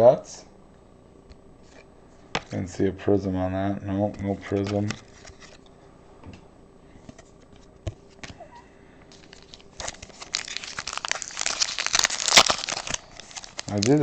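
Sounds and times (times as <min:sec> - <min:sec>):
card pack wrapper tearing: 0:09.1 - 0:14.0.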